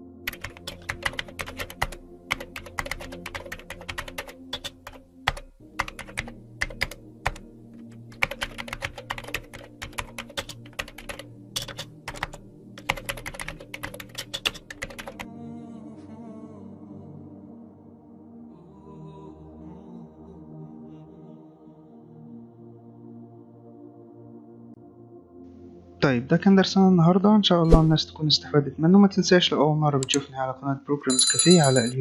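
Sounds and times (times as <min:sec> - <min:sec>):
keyboard typing clicks: 0:00.3 - 0:15.2, 0:30.0 - 0:30.2.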